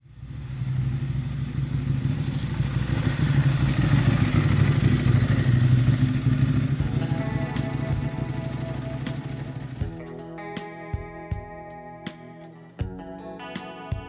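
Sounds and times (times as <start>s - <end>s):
motorcycle engine running: 0.2s - 10.1s.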